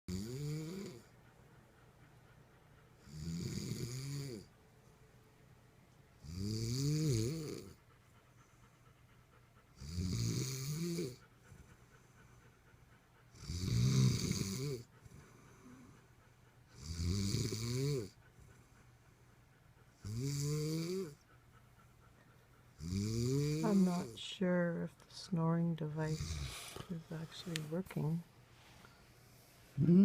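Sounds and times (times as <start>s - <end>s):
person snoring: 0.1s - 1.0s, 6.2s - 7.7s, 13.5s - 14.8s.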